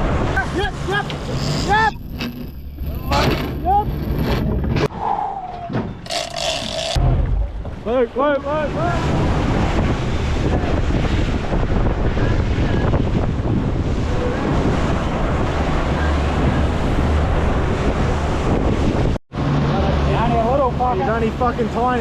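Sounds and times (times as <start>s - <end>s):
sea water rushing: 0.0s - 4.8s, 6.0s - 22.0s
wind buffeting microphone: 7.0s - 19.2s.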